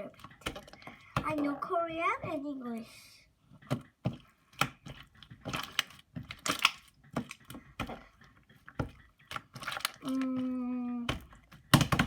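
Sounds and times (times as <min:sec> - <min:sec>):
slime squelching wet clicks: 0:04.5 - 0:08.0.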